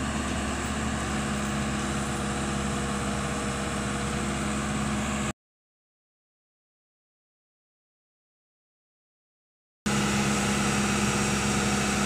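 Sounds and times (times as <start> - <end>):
excavator diesel engine running: 0.0 - 5.3, 9.9 - 12.0.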